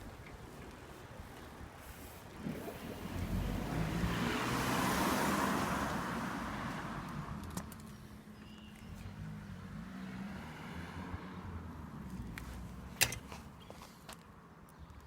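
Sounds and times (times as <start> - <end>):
motor vehicle passing by: 2.4 - 7.5, 8.8 - 12.9.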